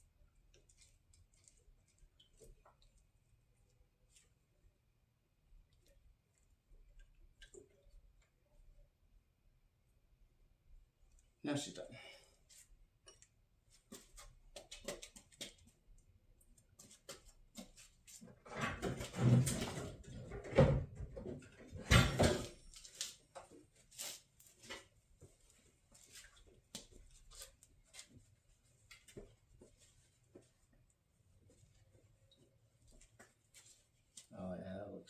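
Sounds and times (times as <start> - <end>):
rustling and thumps: 17.7 - 22.9.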